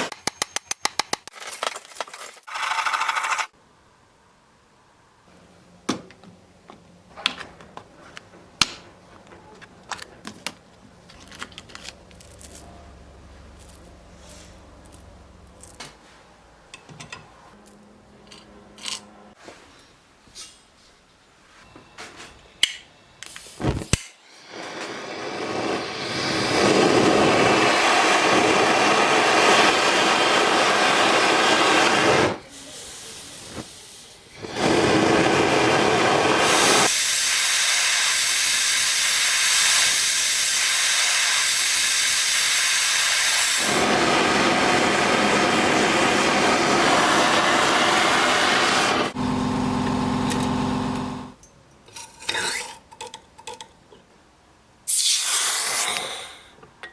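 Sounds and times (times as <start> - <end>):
gas torch flame hissing: 23.2 - 49.4, 54.9 - 56.5.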